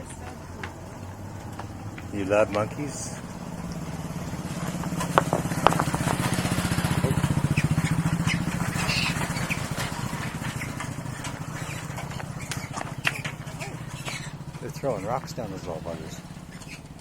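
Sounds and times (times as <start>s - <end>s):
motorcycle engine passing by: 0.0s - 17.0s.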